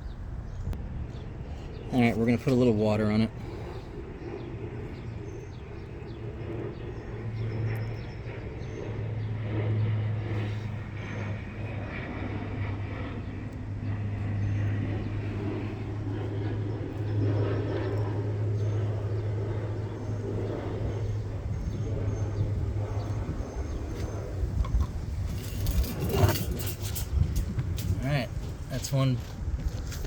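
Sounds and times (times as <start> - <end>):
low mechanical hum: 0.0 - 30.0
rough rumble: 22.6 - 30.0.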